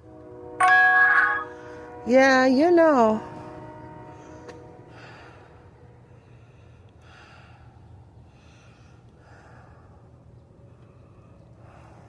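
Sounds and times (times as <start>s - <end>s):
steady low hum: 3.0s - 12.0s
soft close breathing: 4.2s - 12.0s.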